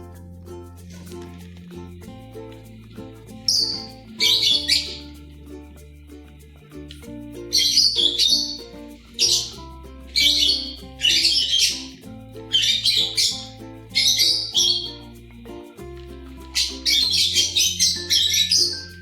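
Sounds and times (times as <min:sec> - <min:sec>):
background music: 0:00.0 - 0:19.0
cockatiels chirping and squawking: 0:03.5 - 0:05.1, 0:07.6 - 0:08.6, 0:09.2 - 0:09.6, 0:10.2 - 0:15.0, 0:16.5 - 0:19.0.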